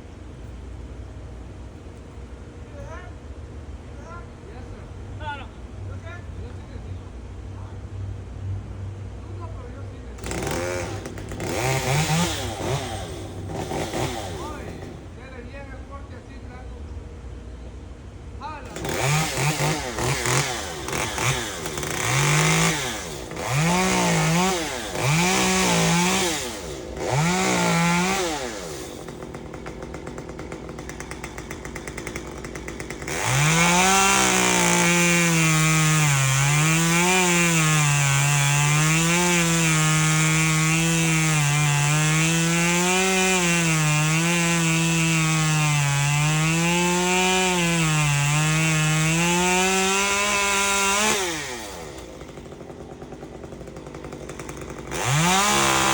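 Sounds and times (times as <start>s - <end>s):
chainsaw cutting wood: 10.2s - 15.3s, 18.6s - 55.9s
chainsaw revving: 10.2s - 15.3s, 18.6s - 55.9s.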